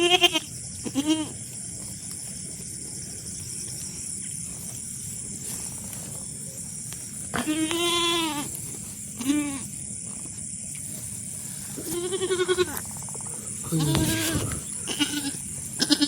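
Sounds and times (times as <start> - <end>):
goat bleating: 0.0 - 1.4, 7.3 - 8.5, 9.2 - 9.7, 11.8 - 12.9, 13.6 - 16.0.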